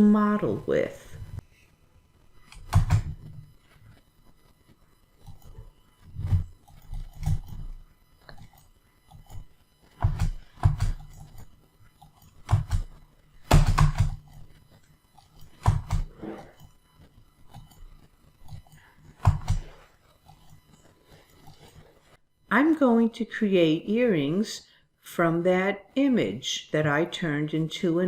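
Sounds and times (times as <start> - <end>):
computer keyboard tapping: 2.5 - 3.2, 10.0 - 11.4, 12.0 - 12.9, 13.5 - 14.4, 18.5 - 19.7.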